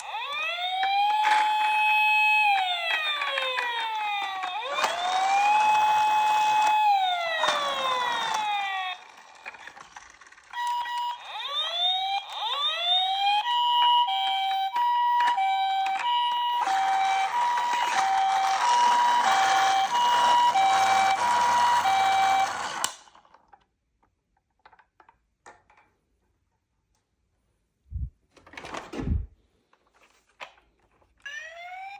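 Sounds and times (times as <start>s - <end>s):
toy electronic siren: 0.0s - 23.0s, 31.2s - 31.9s.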